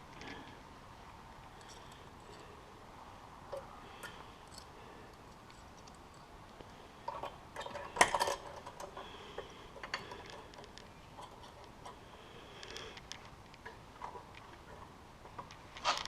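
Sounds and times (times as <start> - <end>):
tools clicking and clinking: 3.5 - 6.3, 7.0 - 12.0.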